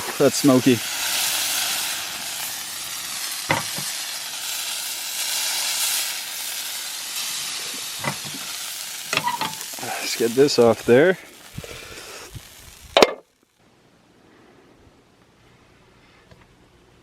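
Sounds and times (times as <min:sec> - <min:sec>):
sausages sizzling in frying pan: 0:00.0 - 0:13.6.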